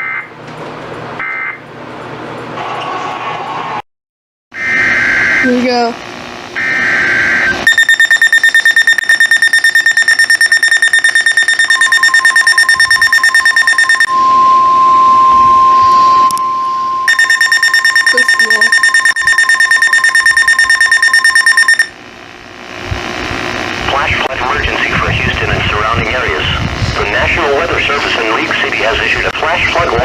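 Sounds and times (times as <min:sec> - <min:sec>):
data burst tones: 0:06.6 - 0:14.2, 0:17.0 - 0:21.9
pulsing electronic alarm beep: 0:06.6 - 0:22.0
steady warning alarm tone: 0:06.6 - 0:22.0.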